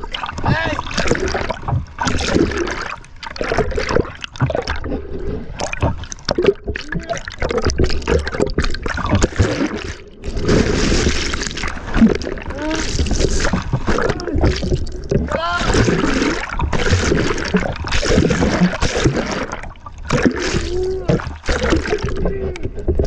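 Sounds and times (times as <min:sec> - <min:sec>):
sea water splashing in surf: 0:08.2 - 0:22.9
whitewater breaking: 0:09.0 - 0:22.9.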